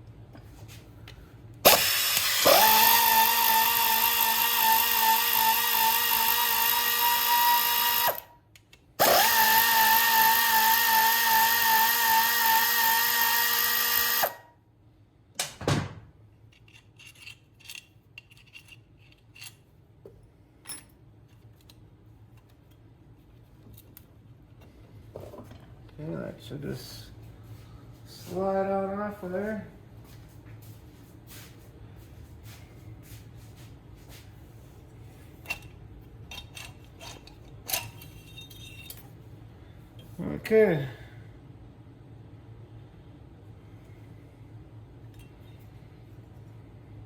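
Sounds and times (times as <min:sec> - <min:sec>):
cordless drill motor whining: 0:01.7 - 0:08.3, 0:09.0 - 0:14.4
metal parts clinking: 0:16.5 - 0:19.7, 0:35.4 - 0:39.2.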